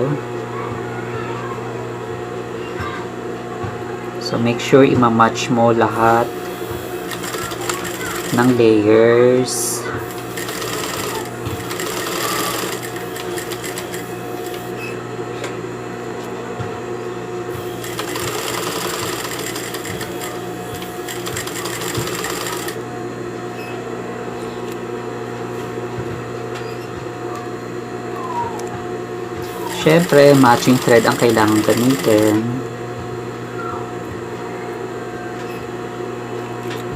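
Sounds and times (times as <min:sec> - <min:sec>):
sewing machine running: 0:06.2 - 0:08.6, 0:10.0 - 0:14.7, 0:17.5 - 0:22.8, 0:29.5 - 0:32.6.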